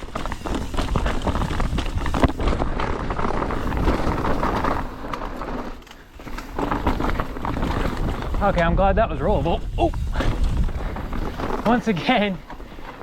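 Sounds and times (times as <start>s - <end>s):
bike rattling and knocking: 0.0s - 13.0s
bike tyres rolling over rock: 0.0s - 13.0s
wind on microphone: 7.8s - 11.4s.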